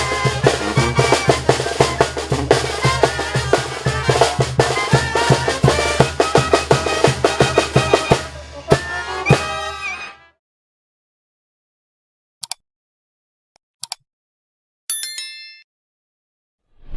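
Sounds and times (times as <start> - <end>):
bass drum and snare beat: 0.0 - 9.6
wind instruments melody: 0.0 - 10.3.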